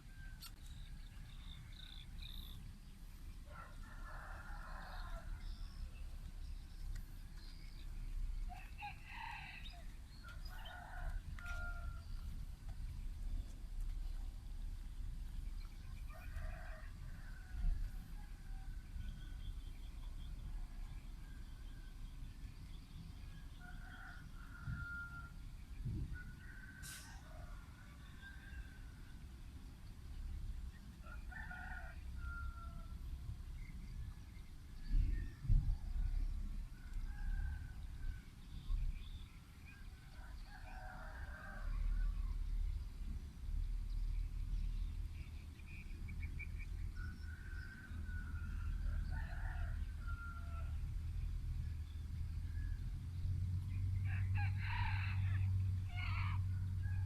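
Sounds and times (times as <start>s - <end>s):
steady low rumble: 0.0s - 26.5s, 32.8s - 40.5s
bird chirps: 0.1s - 3.8s.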